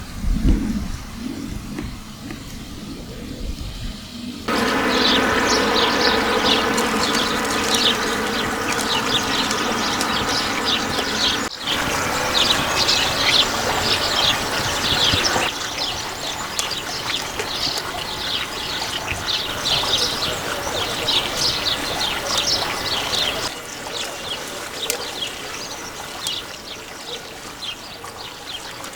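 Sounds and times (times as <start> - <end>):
wild birds chirping and singing: 2.8 - 28.9
steady droning tone: 4.5 - 15.5
steady rushing background noise: 4.5 - 15.5.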